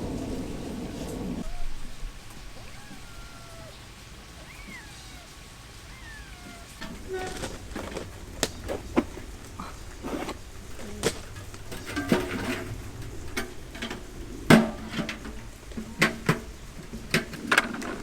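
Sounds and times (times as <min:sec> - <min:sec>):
irregular clicks and knocks: 0:06.8 - 0:18.0.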